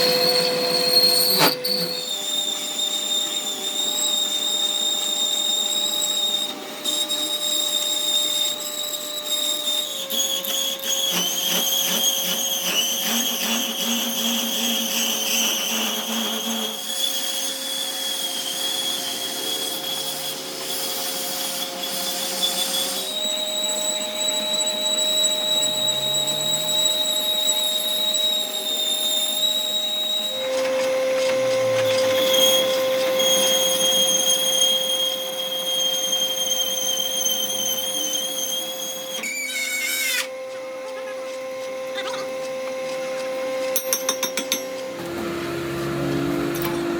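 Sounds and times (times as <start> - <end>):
machine tools whining: 21.8 - 46.9.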